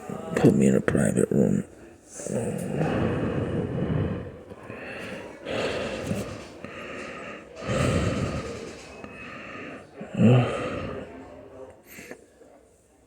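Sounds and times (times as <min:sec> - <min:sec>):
person breathing hard and gasping: 0:02.2 - 0:11.2.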